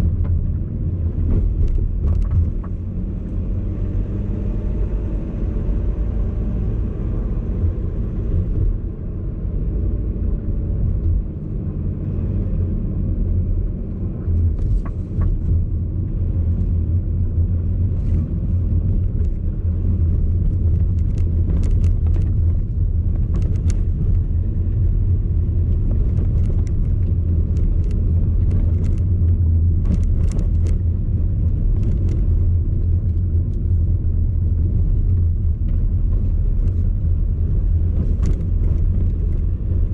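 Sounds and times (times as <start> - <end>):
sharp suspension rattles and clicks: 0.0 - 3.4, 14.2 - 39.9
road and engine rumble in cabin: 0.0 - 39.9.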